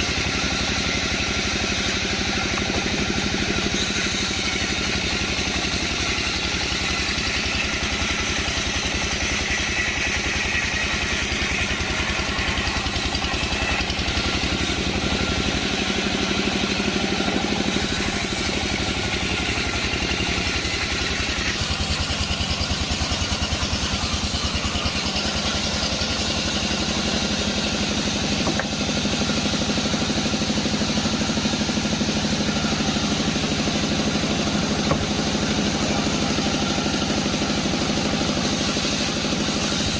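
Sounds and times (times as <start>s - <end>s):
sawmill engine drone: 0.0s - 39.9s.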